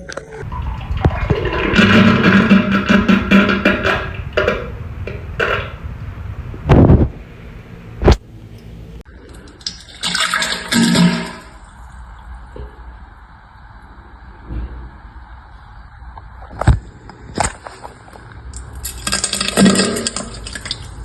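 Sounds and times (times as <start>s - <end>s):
toilet flush: 0.5s - 5.7s, 9.1s - 11.8s, 18.8s - 21.0s.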